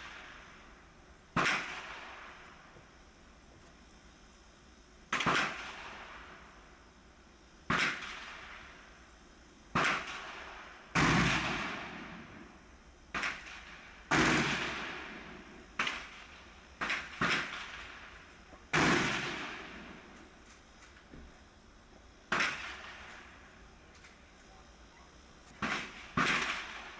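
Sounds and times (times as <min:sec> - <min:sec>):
gunshots with long echo: 0:18.7 - 0:20.0, 0:25.6 - 0:26.9.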